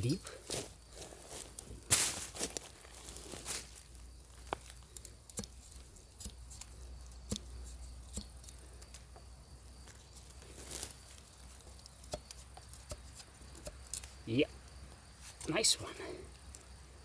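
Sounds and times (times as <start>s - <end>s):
machete cutting wood: 5.2s - 8.6s, 11.6s - 14.2s.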